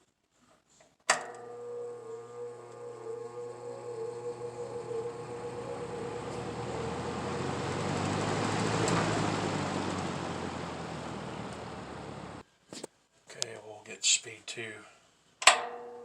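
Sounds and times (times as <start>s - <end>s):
fan motor hum: 1.2s - 12.4s.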